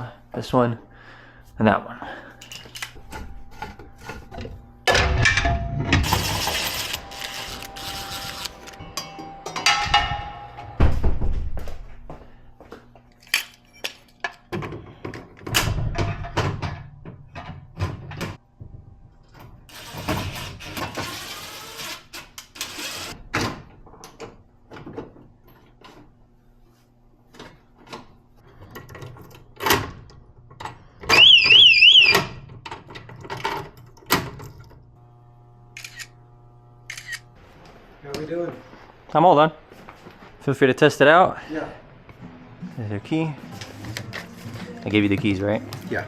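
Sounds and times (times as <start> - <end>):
power tool whirring: 6.0 - 8.8, 35.0 - 37.4
door alarm warbling: 31.1 - 32.4.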